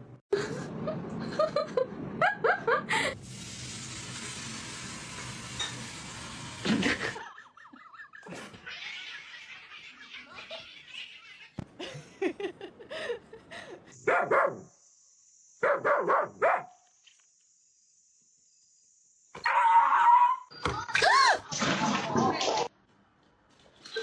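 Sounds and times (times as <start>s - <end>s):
dog barking: 14.1s - 14.6s, 15.6s - 16.8s.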